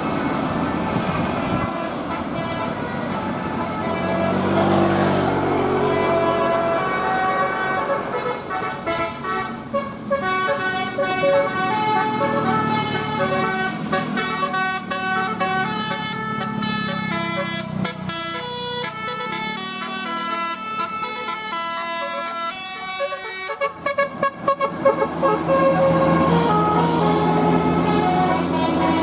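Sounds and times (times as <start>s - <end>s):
musical air horn playing a tune: 1.2s - 29.0s.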